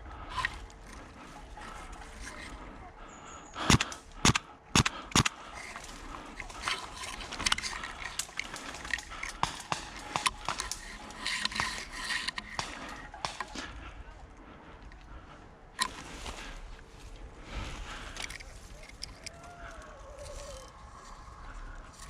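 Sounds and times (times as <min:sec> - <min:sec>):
rustling: 0:05.3 - 0:13.9.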